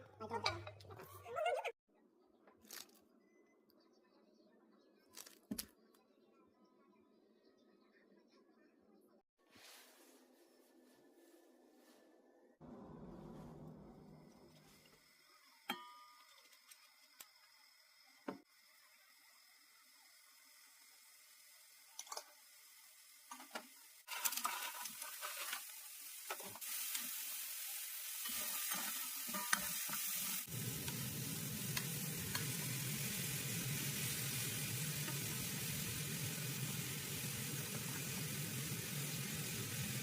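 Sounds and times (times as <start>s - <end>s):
food sizzling in a pan: 14.6s - 40.0s.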